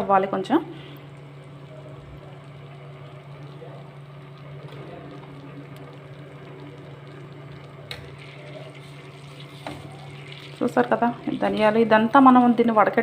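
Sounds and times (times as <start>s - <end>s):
low steady hum: 0.0s - 13.0s
pot of water simmering: 0.3s - 13.0s.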